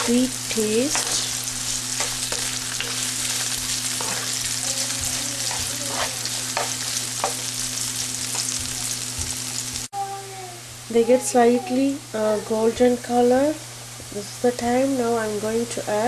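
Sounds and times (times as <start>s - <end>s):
spatula scraping and clicking: 0.0s - 7.6s
onion sizzling in oil: 0.0s - 9.9s.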